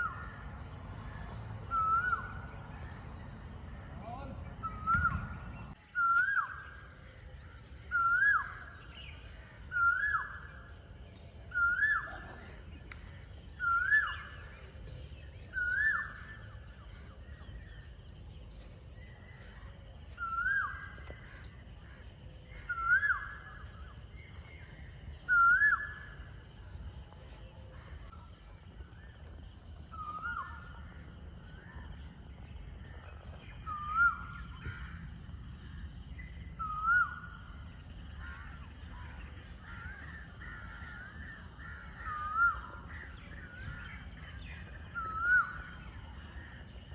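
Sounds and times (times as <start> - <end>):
bird whistling call: 1.7 - 2.5, 4.6 - 6.8, 25.3 - 26.2.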